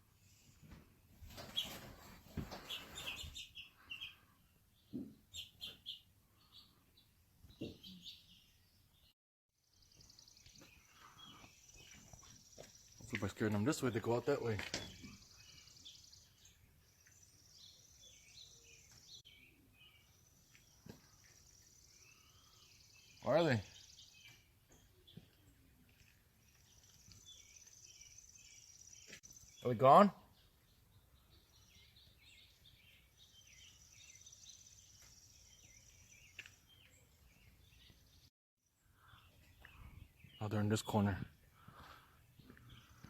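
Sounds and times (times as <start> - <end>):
finch chirps: 2.4 - 4.2, 4.8 - 6.8.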